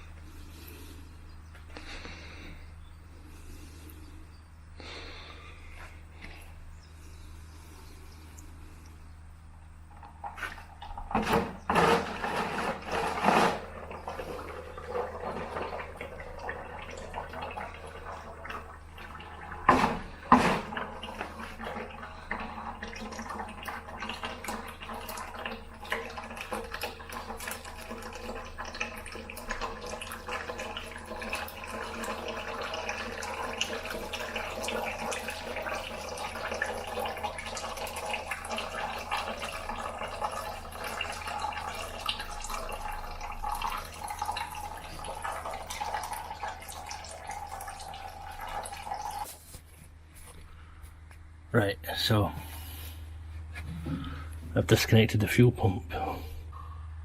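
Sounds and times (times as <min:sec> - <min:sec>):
liquid trickling into a container: 0:09.9 - 0:49.4.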